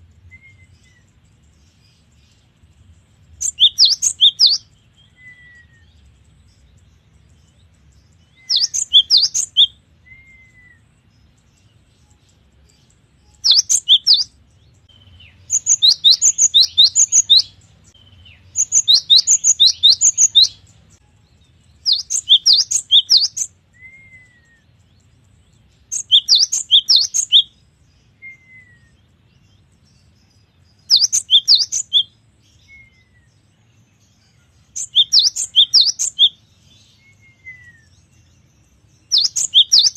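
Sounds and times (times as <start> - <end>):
soft down-slurred bird calls: 3.4 - 39.9
bird singing sharp high notes: 8.4 - 10.8, 13.3 - 14.3, 14.9 - 20.6, 21.8 - 24.6, 25.9 - 27.5, 34.8 - 37.9.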